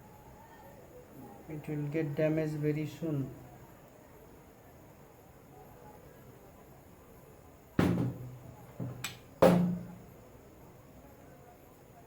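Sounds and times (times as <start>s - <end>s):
heavy drum-like thuds: 7.8s - 10.0s.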